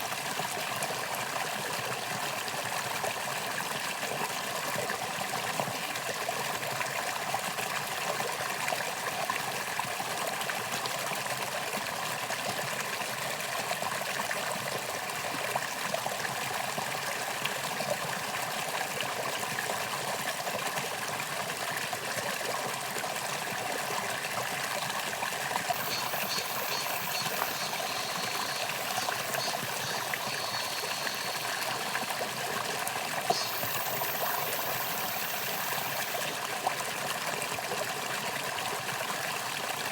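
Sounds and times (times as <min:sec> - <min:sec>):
stream flowing over rocks: 0:00.0 - 0:39.9
short high-pitched repeated sounds: 0:25.7 - 0:32.5, 0:33.3 - 0:36.4
steady high-pitched sound: 0:25.7 - 0:32.7, 0:33.3 - 0:36.4.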